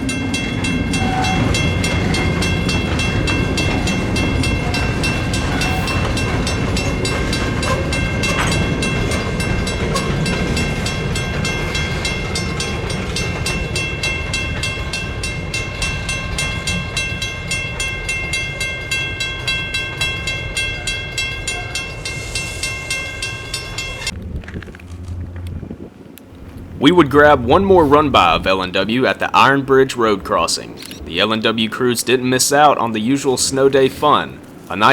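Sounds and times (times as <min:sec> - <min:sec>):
high-pitched ringing tones: 0:00.0 - 0:24.2
train engine rumble: 0:00.0 - 0:34.9
wheels clicking over rail joints: 0:00.0 - 0:34.9.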